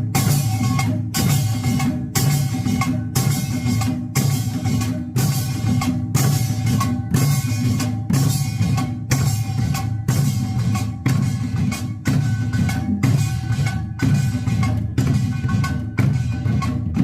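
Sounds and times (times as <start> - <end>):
barrel drums playing rhythm: 0.0 - 17.0.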